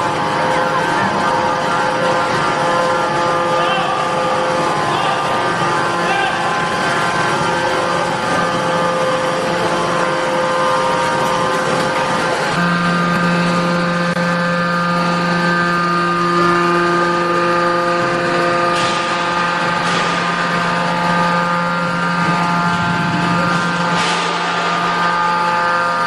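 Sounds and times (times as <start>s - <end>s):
hydraulic power unit whining: 0.0s - 26.0s.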